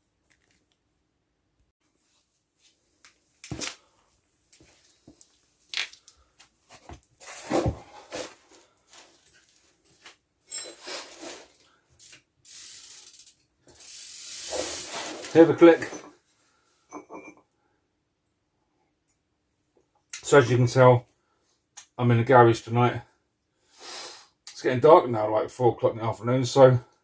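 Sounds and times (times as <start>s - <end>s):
short hiss: 12.5s - 15.3s, 23.7s - 24.4s.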